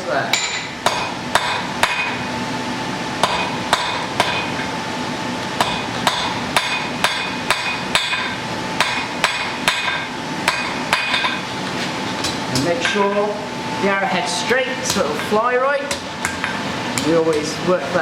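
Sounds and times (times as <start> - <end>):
hammer striking iron on anvil: 0.3 - 2.2, 3.2 - 4.7, 5.6 - 11.4.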